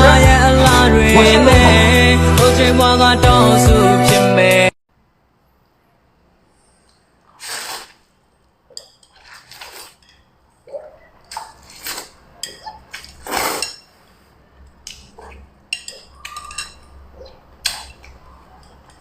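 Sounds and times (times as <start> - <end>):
person slurping noodles: 7.3 - 8.1, 9.2 - 10.0, 13.0 - 13.8
wet smacks: 17.6 - 18.2.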